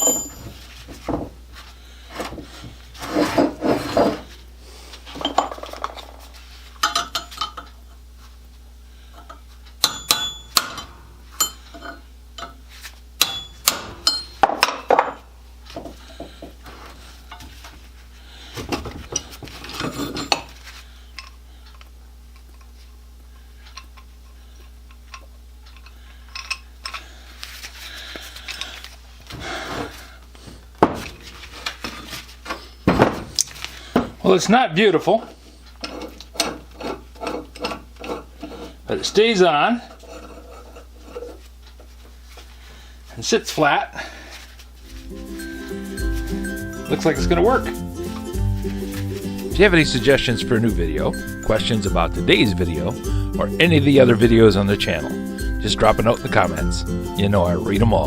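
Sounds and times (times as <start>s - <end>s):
metal tools clinking and clattering: 0.0s - 0.6s, 6.8s - 7.8s, 13.2s - 15.2s, 19.2s - 20.5s
steady low hum: 0.0s - 34.2s, 35.2s - 58.0s.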